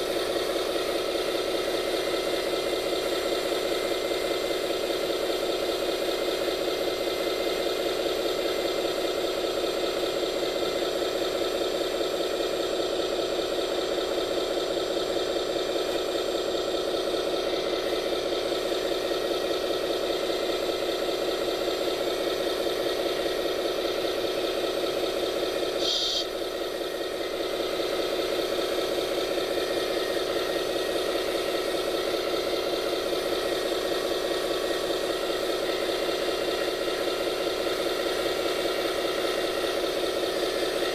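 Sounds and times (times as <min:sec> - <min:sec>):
toy machine motor whining: 0:25.8 - 0:26.4.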